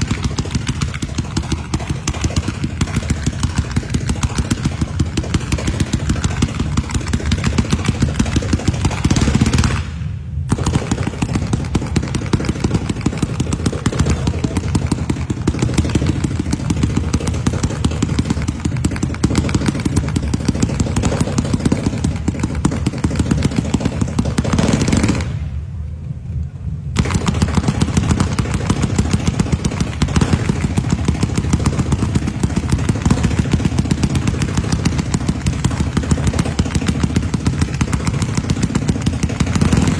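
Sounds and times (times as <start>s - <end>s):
firecrackers popping: 0.0s - 25.6s, 27.0s - 39.9s.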